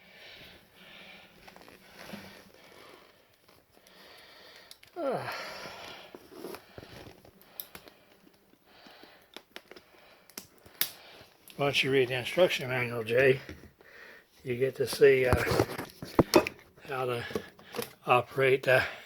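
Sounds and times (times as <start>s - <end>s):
quiet breathing: 0.0s - 11.5s, 13.3s - 14.5s, 18.7s - 19.0s.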